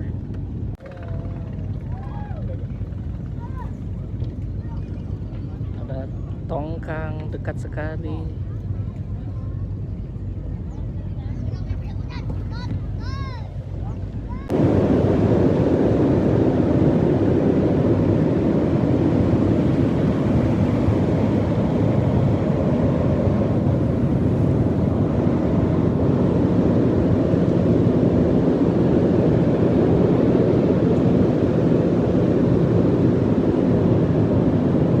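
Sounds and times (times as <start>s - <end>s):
ship engine rumble: 0.0s - 35.0s
wind across microphone: 0.0s - 35.0s
sea: 13.0s - 35.0s.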